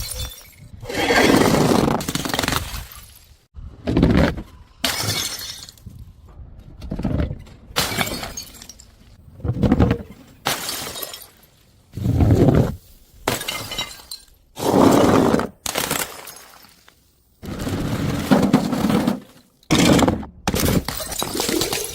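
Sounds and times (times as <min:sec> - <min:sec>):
glass bottles smashing: 0:04.8 - 0:05.8, 0:07.8 - 0:09.0, 0:10.5 - 0:11.5, 0:13.3 - 0:14.4, 0:20.6 - 0:21.9.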